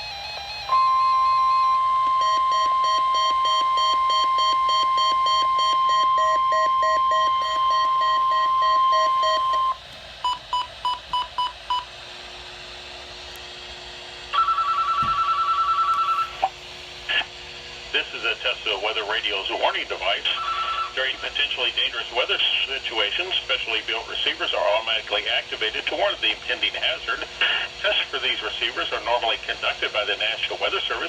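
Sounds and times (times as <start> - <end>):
steady warning alarm tone: 0.0 - 11.9, 14.3 - 16.5, 20.1 - 21.2.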